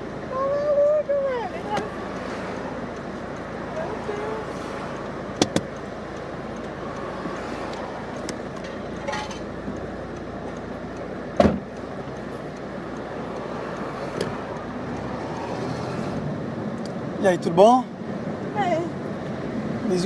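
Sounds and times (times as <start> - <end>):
street traffic noise: 0.0 - 20.0
sharp thump: 11.4 - 11.7.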